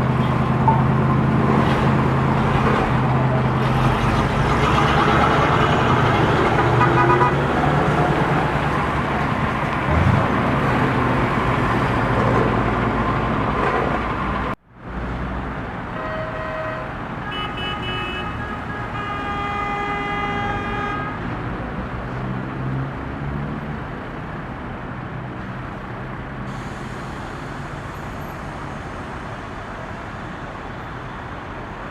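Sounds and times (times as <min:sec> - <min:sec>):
road traffic engines and tyres: 0:00.0 - 0:31.9
car horns honking: 0:04.8 - 0:07.8, 0:16.0 - 0:21.2.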